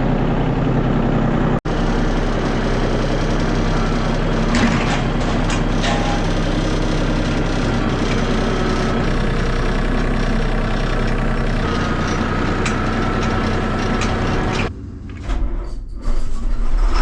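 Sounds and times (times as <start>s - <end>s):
heavy farm machine engine running: 0.0s - 15.7s.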